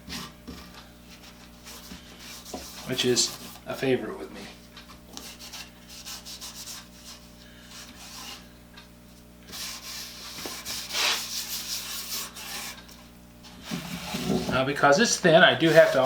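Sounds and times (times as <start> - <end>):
cloth rubbing on wood: 9.5 - 12.8, 13.6 - 16.0.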